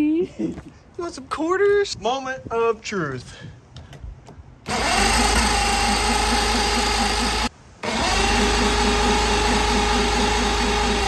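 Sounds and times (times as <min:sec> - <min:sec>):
electric starter cranking engine: 0:04.6 - 0:11.0.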